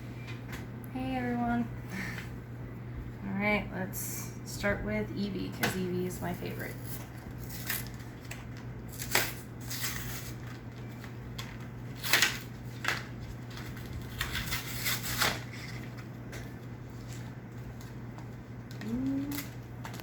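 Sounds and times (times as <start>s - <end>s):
steady low hum: 0.0s - 20.0s
plastic wrap crinkling: 6.7s - 20.0s.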